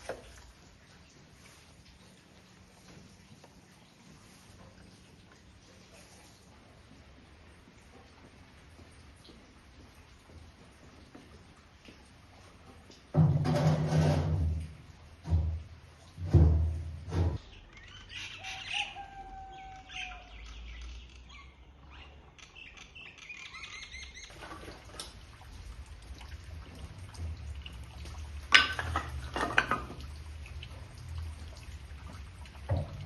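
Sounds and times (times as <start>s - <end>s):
small birds chirping: 17.4s - 24.4s.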